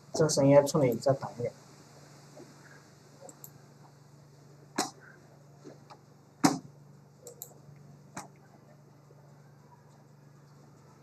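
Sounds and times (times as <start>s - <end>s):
low electrical hum: 0.0s - 11.0s
sharp clicks: 7.2s - 7.6s.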